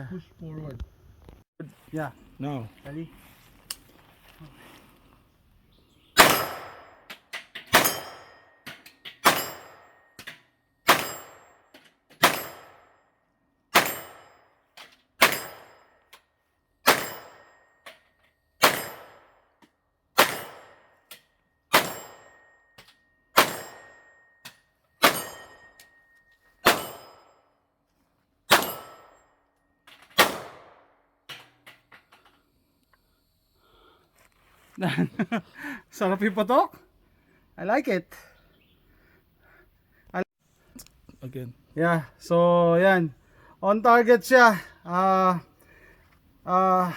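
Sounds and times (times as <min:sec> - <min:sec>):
carbine gunshots: 0:06.2 - 0:07.0, 0:10.8 - 0:11.5, 0:12.2 - 0:12.8, 0:13.7 - 0:14.3, 0:16.8 - 0:17.4, 0:18.6 - 0:19.3, 0:20.2 - 0:20.9, 0:21.7 - 0:22.4, 0:23.4 - 0:23.9, 0:26.6 - 0:27.2, 0:28.5 - 0:29.1, 0:30.2 - 0:30.9.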